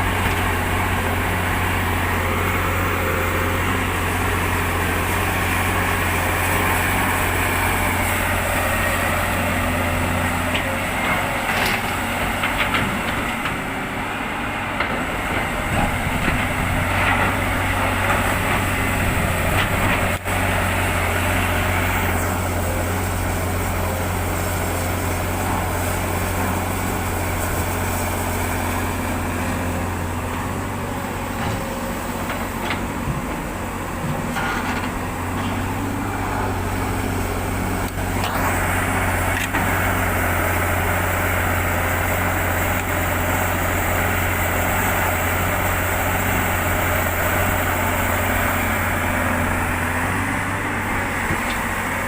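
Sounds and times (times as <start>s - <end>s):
diesel machinery running: 0.0s - 52.0s
metal clanks and scrapes: 34.2s - 35.6s.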